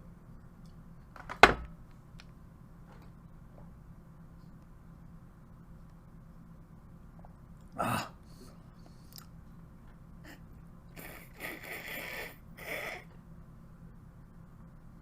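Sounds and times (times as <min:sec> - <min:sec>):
man gasping: 0:07.8 - 0:08.6
man breathing noisily: 0:11.0 - 0:13.1.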